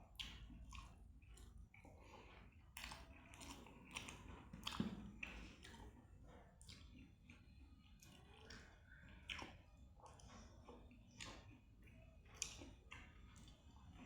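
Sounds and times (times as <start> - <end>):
person chewing food: 0.0 - 14.0
wet mouth clicks and smacks: 11.2 - 13.6.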